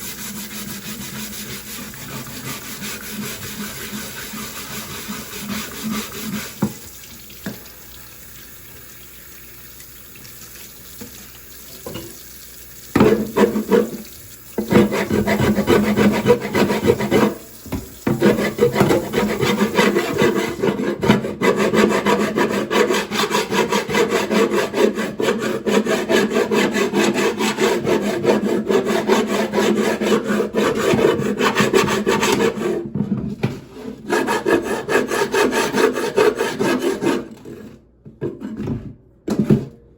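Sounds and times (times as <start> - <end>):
scrubbing wooden chopping board: 0.0 - 6.8, 13.1 - 32.8.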